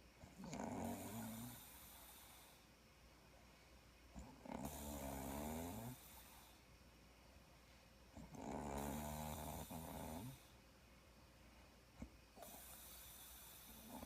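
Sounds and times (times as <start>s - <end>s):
quiet breathing: 0.0s - 14.0s
woman snoring: 0.4s - 2.4s, 4.2s - 6.3s, 8.2s - 10.5s, 12.4s - 14.0s.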